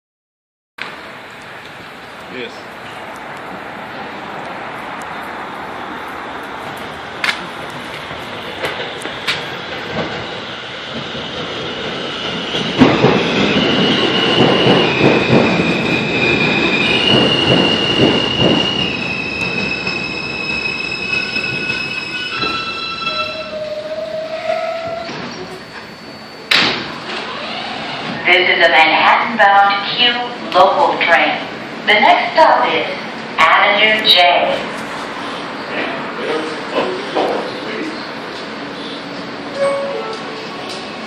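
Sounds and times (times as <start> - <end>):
train wheels clacking over rail joints: 12.2 - 19.7
high brake squealing: 15.9 - 28.0.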